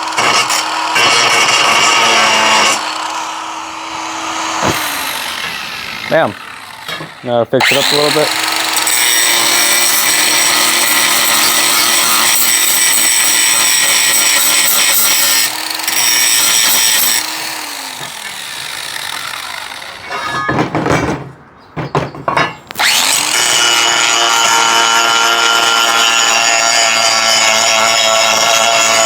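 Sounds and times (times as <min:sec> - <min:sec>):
grinder motor winding down: 0:00.0 - 0:20.1, 0:22.7 - 0:29.0
angle grinder grinding metal: 0:00.0 - 0:20.6, 0:22.7 - 0:29.0
handling knocks: 0:20.0 - 0:22.8.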